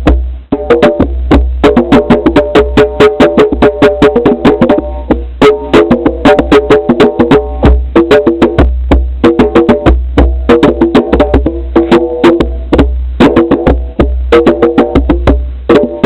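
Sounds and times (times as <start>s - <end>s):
percussive music with bass: 0.0s - 16.0s.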